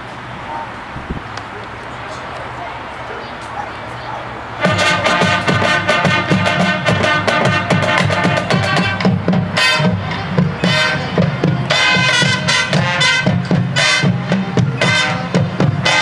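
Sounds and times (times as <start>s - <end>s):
brass chords: 4.4s - 16.0s
drumline beat: 4.6s - 16.0s.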